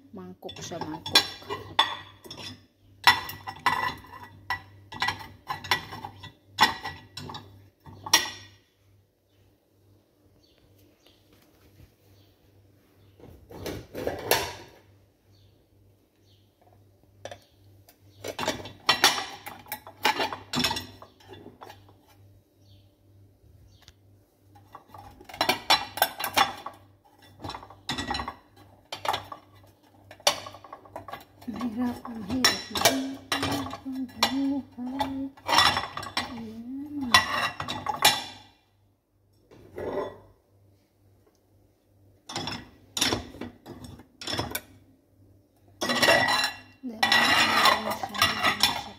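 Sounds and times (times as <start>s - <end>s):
dishes and cutlery clattering: 0.5s - 8.6s, 13.5s - 14.8s, 18.1s - 22.1s, 24.6s - 38.5s, 39.6s - 40.3s, 42.2s - 44.8s, 45.7s - 48.9s.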